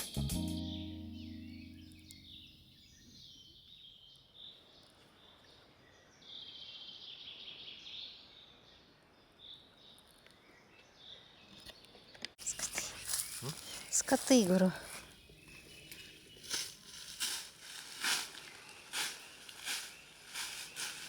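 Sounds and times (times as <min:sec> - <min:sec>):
forest birdsong: 0:00.2 - 0:21.0
outdoor background hiss: 0:12.4 - 0:21.0.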